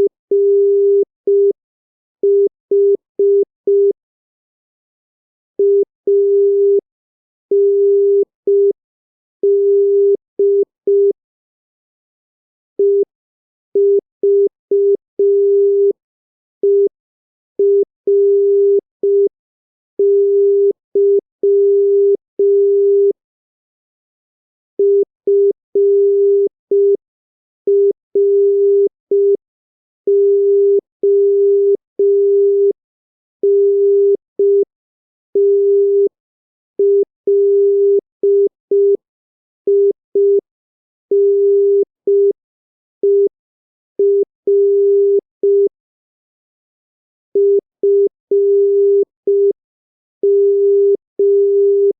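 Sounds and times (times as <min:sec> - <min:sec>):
morse code beeps: 0:20.0 - 0:23.1, 0:24.8 - 0:27.0, 0:27.7 - 0:29.4, 0:30.1 - 0:32.7, 0:33.4 - 0:34.6, 0:35.4 - 0:36.1, 0:36.8 - 0:39.0, 0:41.1 - 0:42.3, 0:43.0 - 0:43.3, 0:44.0 - 0:45.7, 0:47.4 - 0:49.6, 0:50.2 - 0:51.9.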